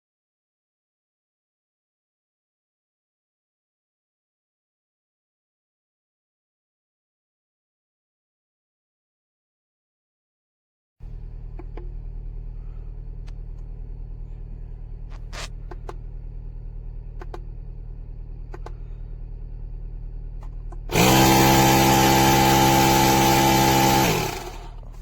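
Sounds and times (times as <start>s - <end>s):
air compressor buzzing drone: 11.0s - 25.0s
low steady hum: 11.0s - 25.0s.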